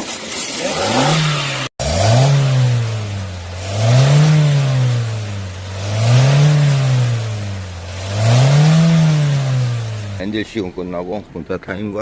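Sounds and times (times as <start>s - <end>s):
car engine revving: 0.6s - 10.2s.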